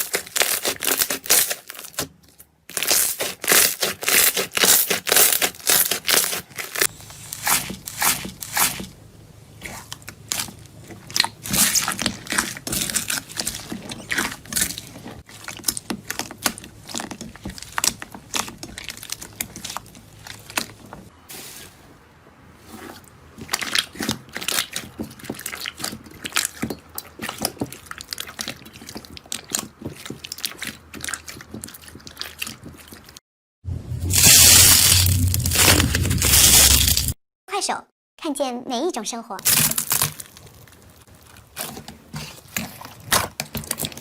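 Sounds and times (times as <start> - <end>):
slime wet crackling and popping: 9.6 - 20.8, 23.4 - 33.2.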